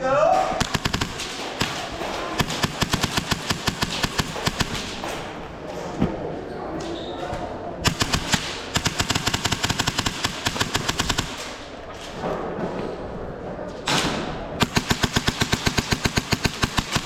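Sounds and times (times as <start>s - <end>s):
airsoft gun rapid firing: 0.6s - 5.4s, 7.8s - 11.8s, 14.6s - 17.0s.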